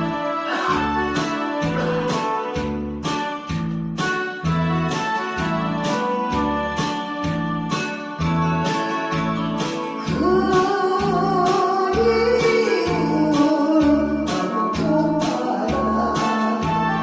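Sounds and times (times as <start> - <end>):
person singing with vibrato: 0.0 - 2.5, 9.9 - 17.0
backing track with beat and bass: 0.0 - 17.0.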